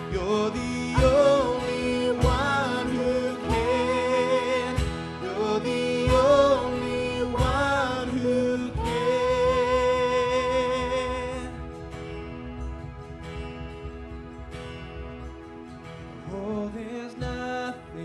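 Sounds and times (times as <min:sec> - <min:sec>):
voices singing in harmony: 0:00.0 - 0:11.8
guitar: 0:00.0 - 0:18.0
steady beat: 0:01.0 - 0:10.2.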